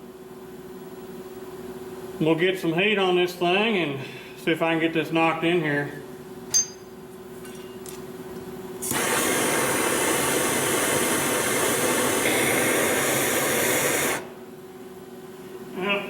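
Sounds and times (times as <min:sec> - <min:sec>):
gas torch hissing: 0:08.8 - 0:14.4.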